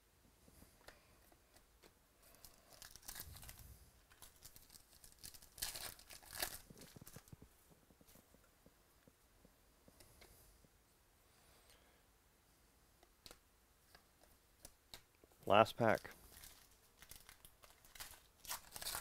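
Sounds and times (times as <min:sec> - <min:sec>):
plastic wrapper crinkling and tearing: 0:02.3 - 0:07.4, 0:16.0 - 0:19.0.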